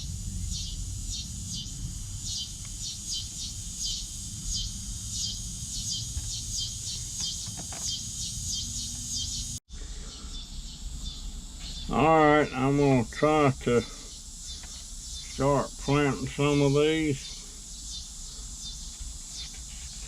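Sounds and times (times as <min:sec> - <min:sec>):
low background rumble: 0:00.0 - 0:07.4.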